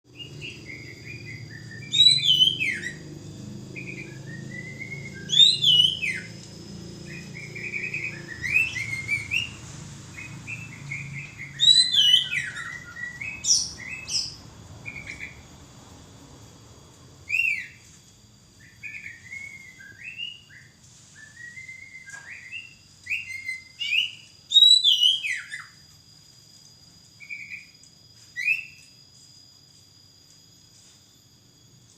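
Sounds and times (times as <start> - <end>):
magpie-robin singing whistled phrases: 0.1 - 3.2, 3.8 - 6.4, 7.0 - 15.4, 17.3 - 17.8, 18.6 - 25.8, 28.3 - 28.8
low hum: 0.1 - 23.0.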